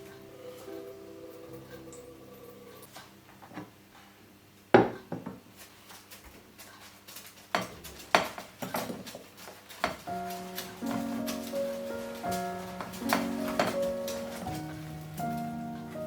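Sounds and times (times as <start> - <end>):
dishes and utensils clinking: 7.6 - 15.6.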